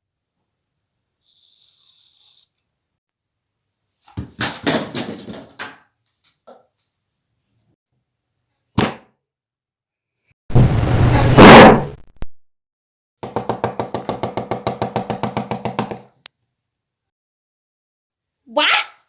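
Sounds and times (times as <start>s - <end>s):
sharp bangs or knocks: 10.5s - 12.0s.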